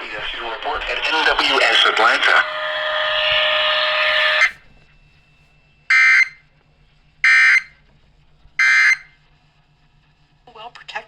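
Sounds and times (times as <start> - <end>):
loud noisy sound: 0.0 - 4.8.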